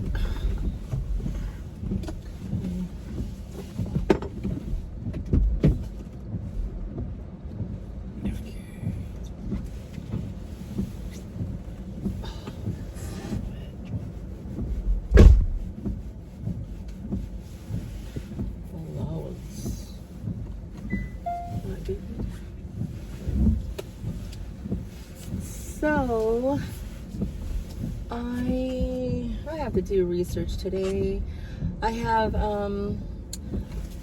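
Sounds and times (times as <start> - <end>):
low rumble inside car: 0.0 - 34.0
loud thump: 15.0 - 15.6.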